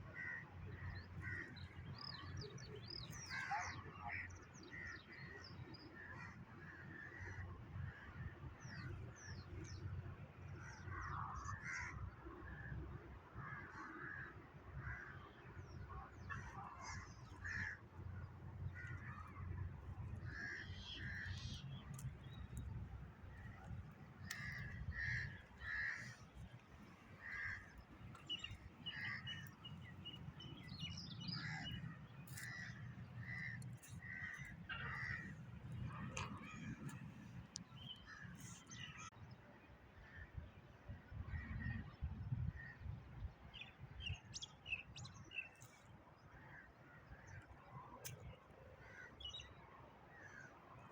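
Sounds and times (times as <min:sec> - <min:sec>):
birds chirping: 0:16.2 - 0:39.1
steady low rumble: 0:16.8 - 0:38.3.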